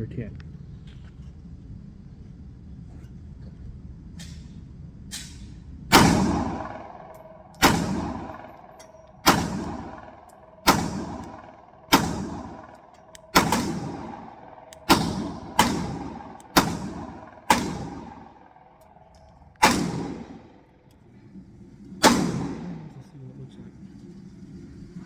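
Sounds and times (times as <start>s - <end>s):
pistol shots echoing: 5.9s - 20.7s, 22.0s - 23.0s.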